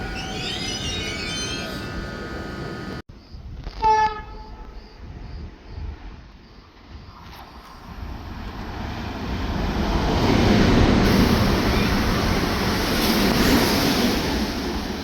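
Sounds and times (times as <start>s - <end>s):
train passing at speed: 7.6s - 15.0s.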